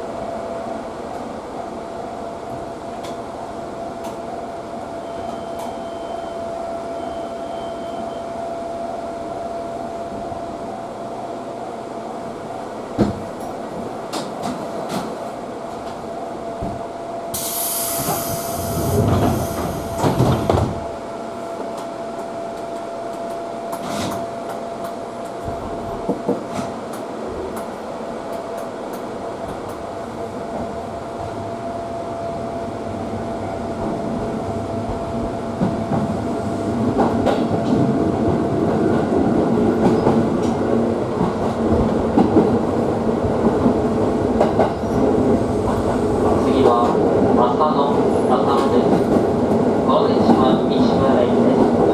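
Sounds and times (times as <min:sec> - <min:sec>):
rail joint clicks: 0:02.9 - 0:03.2, 0:13.0 - 0:15.2, 0:16.6 - 0:20.9, 0:21.7 - 0:29.8, 0:36.8 - 0:39.1, 0:39.7 - 0:47.0
train wheels rumbling on rail: 0:12.3 - 0:51.9.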